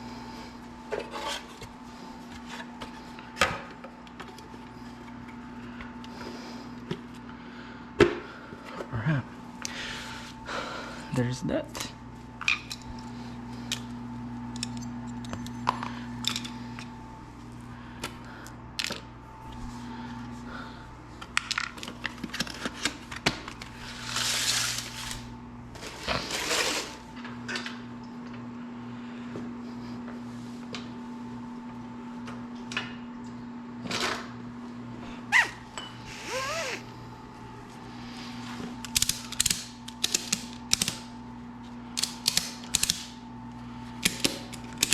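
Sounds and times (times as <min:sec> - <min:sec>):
steady hum: 0:00.0 - 0:32.4.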